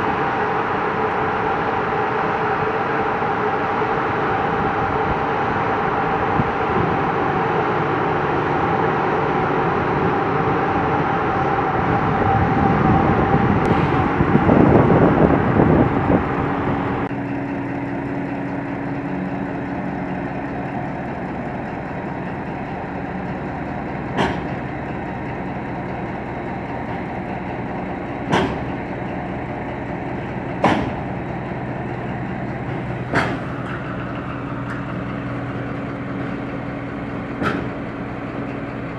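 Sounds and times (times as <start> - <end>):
locomotive engine running: 0.0 - 38.9
sharp knocks: 24.1 - 24.6, 28.3 - 28.8, 30.6 - 31.2, 32.7 - 33.8.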